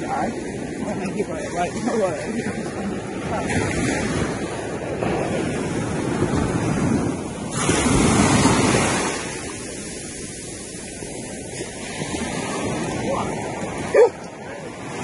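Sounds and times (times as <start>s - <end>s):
waves washing on shore: 0.0s - 15.0s
wind buffeting microphone: 0.0s - 15.0s.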